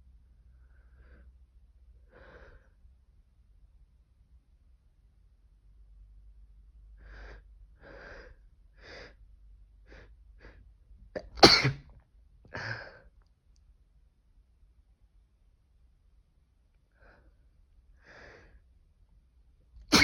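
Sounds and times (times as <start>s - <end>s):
person sneezing: 11.2s - 11.8s.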